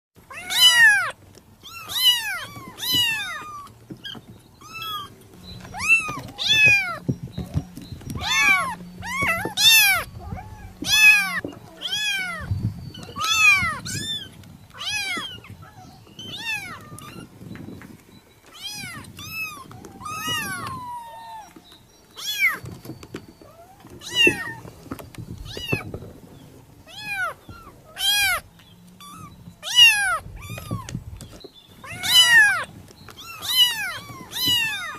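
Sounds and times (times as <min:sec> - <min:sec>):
kitten meowing: 0:00.3 - 0:07.0, 0:08.2 - 0:12.5, 0:13.1 - 0:17.3, 0:18.6 - 0:21.6, 0:24.0 - 0:24.6, 0:26.9 - 0:28.4, 0:29.0 - 0:31.0, 0:31.8 - 0:34.9.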